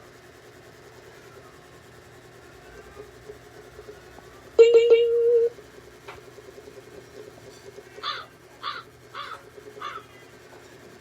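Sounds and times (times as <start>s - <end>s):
loud steady tone: 4.6s - 5.6s
crow cawing: 8.0s - 10.2s.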